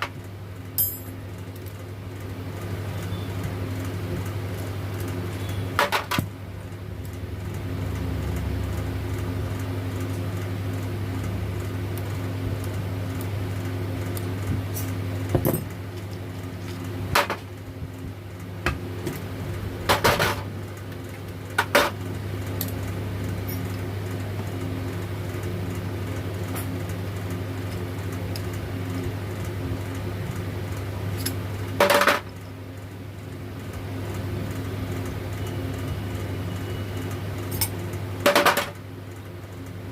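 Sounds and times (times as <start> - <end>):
steady low hum: 0.0 - 39.9
metal parts clinking and knocking: 0.8 - 1.2.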